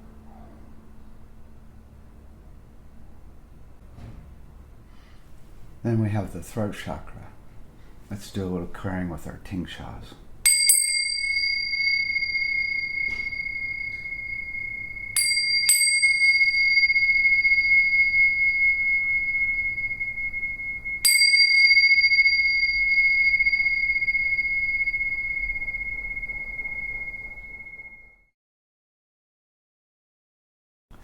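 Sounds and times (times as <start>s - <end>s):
cymbals clashing and ringing: 10.5s - 28.0s.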